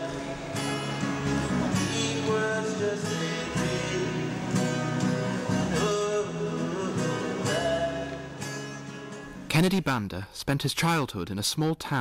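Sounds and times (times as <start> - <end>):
person singing: 0.0 - 8.8
acoustic guitar strumming: 0.0 - 9.8.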